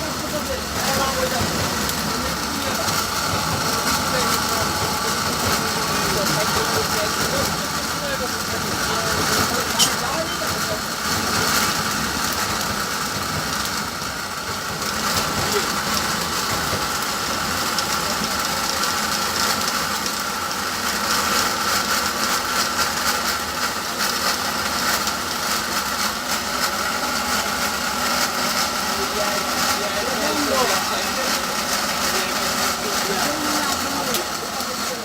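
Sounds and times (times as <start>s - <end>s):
machine whining: 0.0s - 20.2s.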